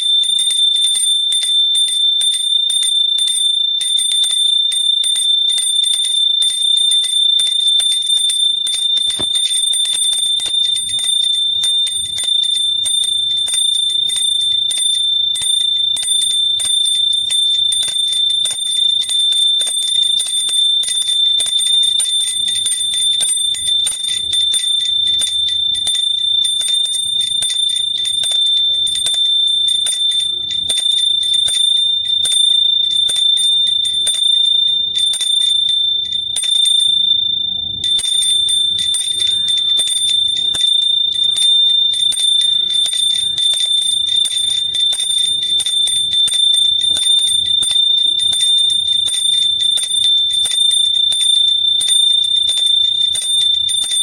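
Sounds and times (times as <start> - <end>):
metal hand bell ringing rapidly: 0.0 - 54.0.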